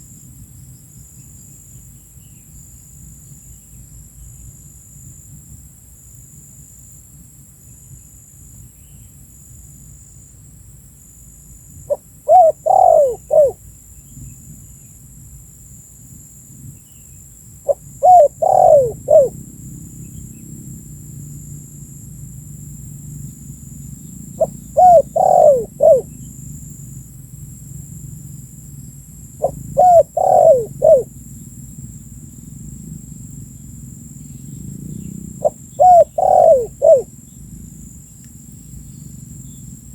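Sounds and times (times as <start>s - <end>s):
dove cooing: 11.9s - 13.6s, 17.7s - 19.4s, 24.4s - 26.2s, 29.4s - 31.1s, 35.4s - 37.1s.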